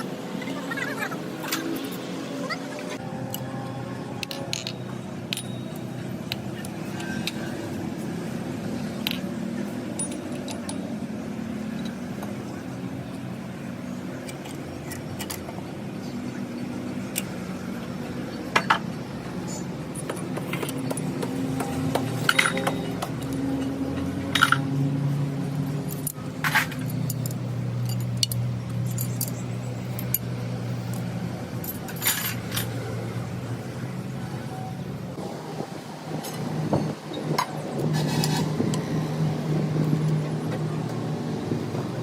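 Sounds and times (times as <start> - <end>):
metal tools clinking: 4.2 - 8.2, 8.8 - 13.2, 18.6 - 33.3.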